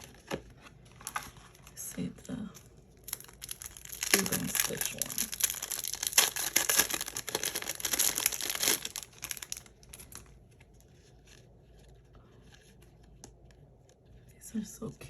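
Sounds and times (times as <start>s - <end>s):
packaging crackling and tearing: 3.0s - 11.4s.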